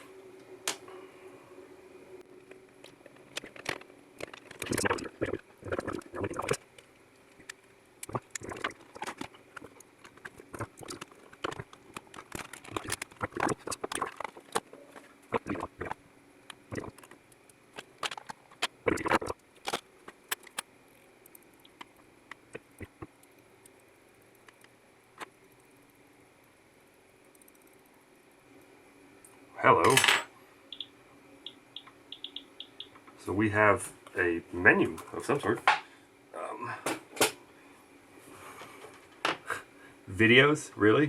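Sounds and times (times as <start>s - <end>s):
plastic parts clicking and knocking: 16.8s - 20.7s.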